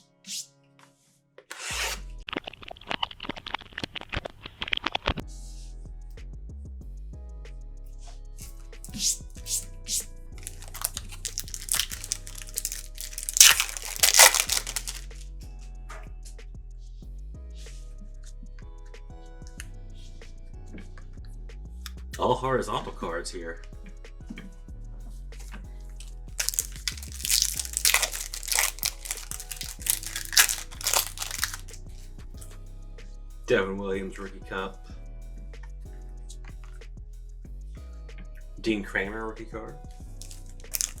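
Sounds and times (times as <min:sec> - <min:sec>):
background music: 0:05.3 - 0:16.8, 0:17.4 - 0:41.0
wrapper crinkling and tearing: 0:08.8 - 0:15.2, 0:26.4 - 0:31.8, 0:40.2 - 0:41.0.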